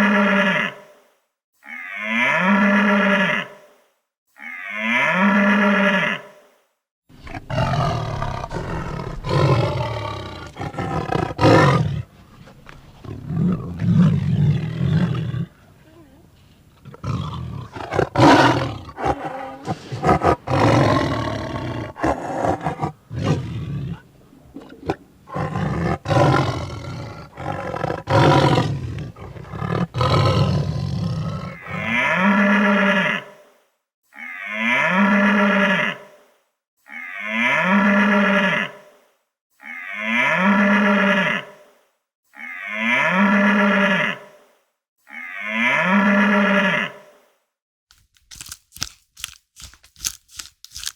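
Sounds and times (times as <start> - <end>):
animal roaring and growling: 1.6 - 3.5, 7.1 - 15.6, 16.8 - 33.3, 34.1 - 36.0, 36.9 - 38.8, 39.6 - 41.6, 42.3 - 44.2, 45.1 - 47.1
cow mooing: 1.6 - 3.6, 4.4 - 6.4, 31.5 - 33.4, 34.1 - 36.1, 36.9 - 38.8, 39.6 - 41.6, 42.3 - 44.3, 45.1 - 47.1.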